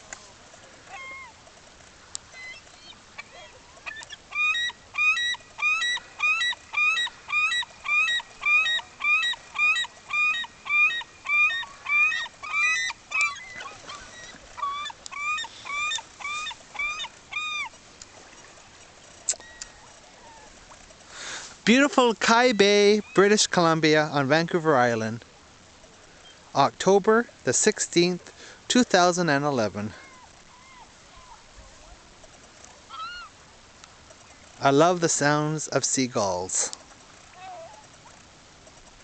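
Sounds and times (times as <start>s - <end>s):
seagulls calling: 0.6s - 1.6s, 2.2s - 24.6s, 29.8s - 35.4s, 36.4s - 38.3s.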